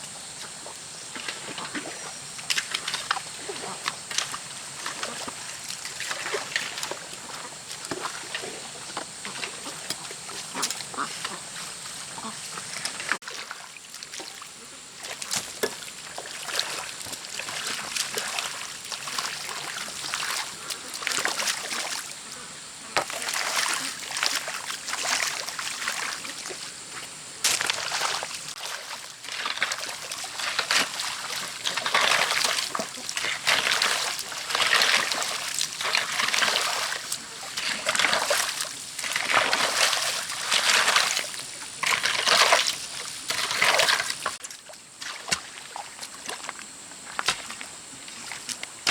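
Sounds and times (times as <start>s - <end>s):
water splashing: 0.4s - 22.2s, 23.0s - 48.9s.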